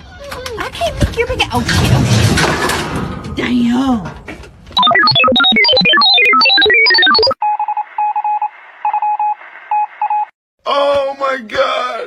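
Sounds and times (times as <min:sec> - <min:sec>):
electronic beeping tones: 0:04.8 - 0:10.3.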